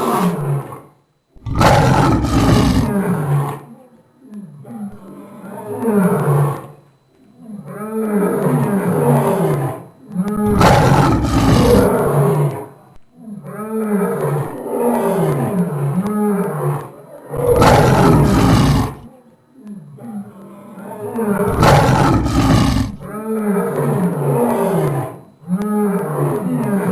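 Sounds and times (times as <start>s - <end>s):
deep lion-like roars: 0.0s - 3.5s, 7.7s - 12.6s, 13.5s - 19.0s, 20.8s - 26.9s.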